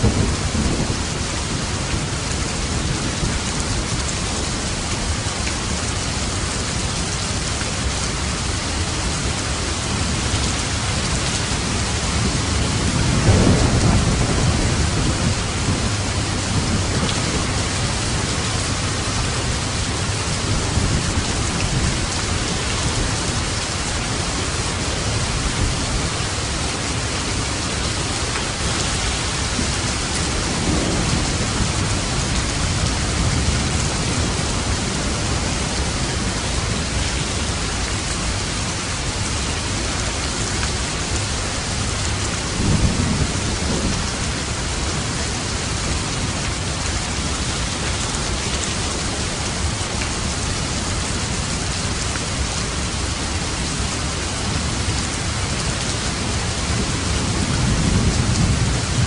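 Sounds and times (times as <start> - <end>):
thunder rumbling: 0.0 - 4.0, 10.7 - 37.0, 42.5 - 46.8, 56.2 - 59.0
steady rain: 0.0 - 59.0.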